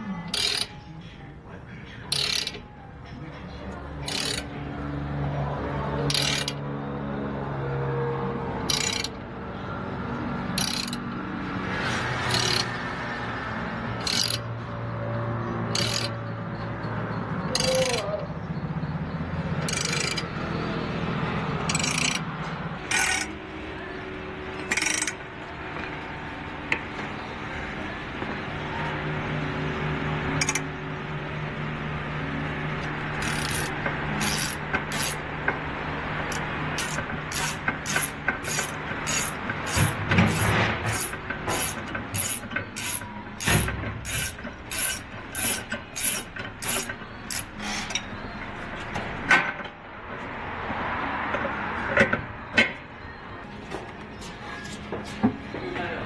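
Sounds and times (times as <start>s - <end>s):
ratchet wrench clicking: 0.3s - 0.8s, 2.1s - 2.7s, 4.0s - 4.5s, 6.0s - 6.6s, 8.6s - 9.2s, 10.5s - 11.2s, 12.2s - 12.8s, 14.0s - 14.5s, 15.7s - 16.3s, 17.5s - 18.3s, 19.6s - 20.3s, 21.6s - 22.3s, 22.9s - 23.4s, 24.6s - 25.2s, 30.4s - 30.7s, 33.1s - 35.2s, 36.3s - 48.0s.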